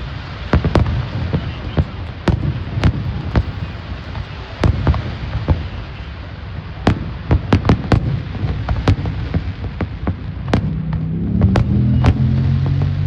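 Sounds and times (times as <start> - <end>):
fireworks bangs: 0.0 - 13.0
low rumble: 10.1 - 13.0.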